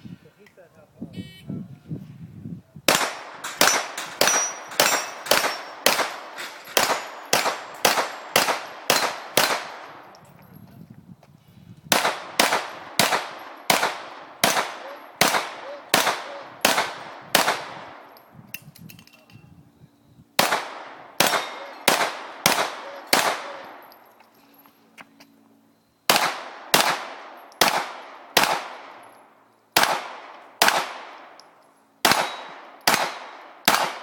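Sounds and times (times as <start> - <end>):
pistol shots echoing: 2.9 - 10.2, 11.9 - 18.1, 20.4 - 24.0, 26.1 - 29.1, 29.8 - 31.4, 32.0 - 34.0
steel plates ringing: 3.2 - 9.2.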